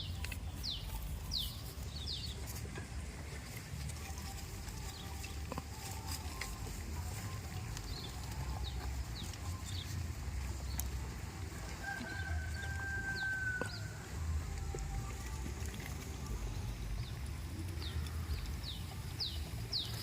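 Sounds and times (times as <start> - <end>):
small birds chirping: 0.0 - 2.7, 3.5 - 11.1, 16.6 - 20.0
rooster crowing: 11.6 - 14.1
low rumble: 14.1 - 19.9.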